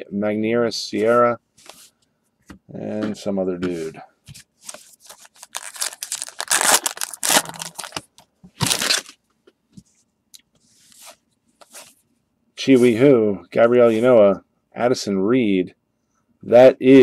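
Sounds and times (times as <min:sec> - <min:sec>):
card pack wrapper tearing: 0:05.0 - 0:09.2.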